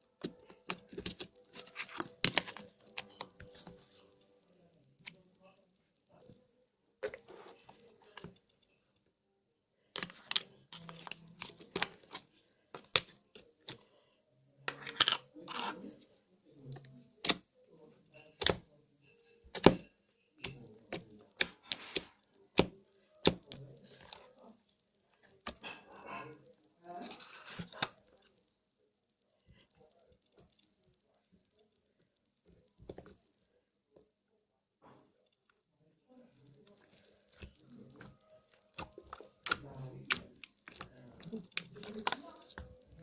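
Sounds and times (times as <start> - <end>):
slime clicking and popping: 37.4 - 42.6.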